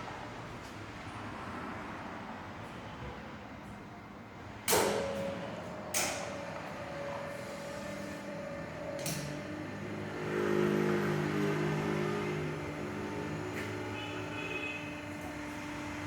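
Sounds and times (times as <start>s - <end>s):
sharp metallic bangs: 4.7s - 6.3s.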